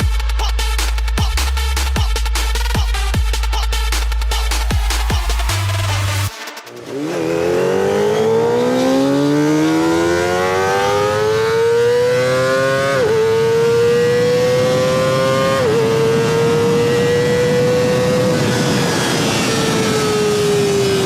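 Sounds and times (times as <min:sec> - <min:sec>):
motorcycle engine accelerating hard: 0:04.7 - 0:21.0.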